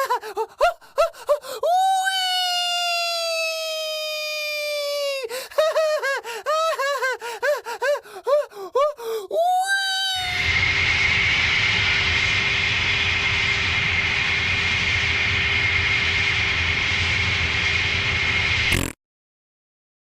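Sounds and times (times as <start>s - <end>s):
whimpering cries: 4.8s - 9.8s
loud droning with high whine: 10.2s - 19.0s.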